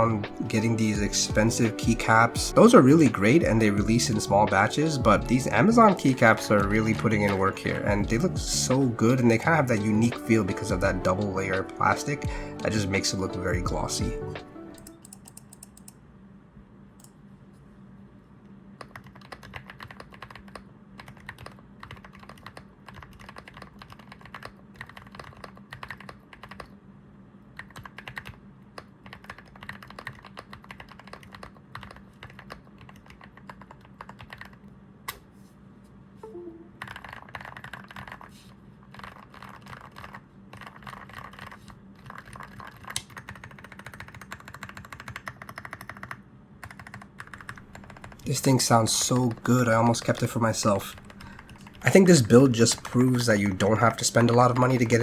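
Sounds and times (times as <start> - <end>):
fast typing on mechanical keyboard: 18.8 - 26.8, 27.6 - 34.7, 36.8 - 55.0.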